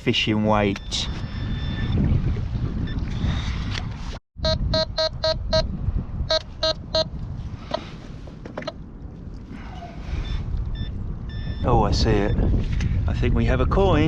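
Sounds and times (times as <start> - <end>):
wind rumble on microphone: 0.3 - 14.0
metal detector beeping: 0.8 - 1.9, 4.4 - 5.7, 6.3 - 7.1.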